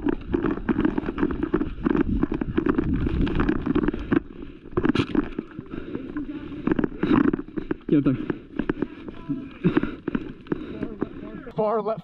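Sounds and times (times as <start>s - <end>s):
wind buffeting microphone: 0.0s - 7.7s
gear jostling: 0.0s - 11.3s
rapid footfalls: 0.0s - 11.5s.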